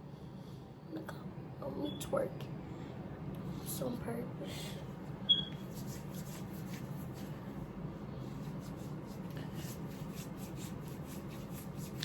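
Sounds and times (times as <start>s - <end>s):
steady low hum: 0.0s - 12.0s
rubbing and rustling handling noise: 4.9s - 12.0s
sharp high squeak: 5.3s - 5.6s.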